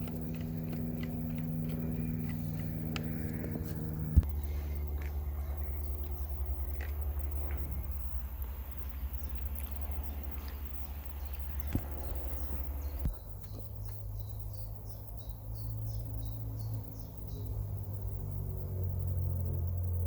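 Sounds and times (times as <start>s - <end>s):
steady low rumble: 0.0s - 20.0s
small bird chirping: 8.1s - 18.2s.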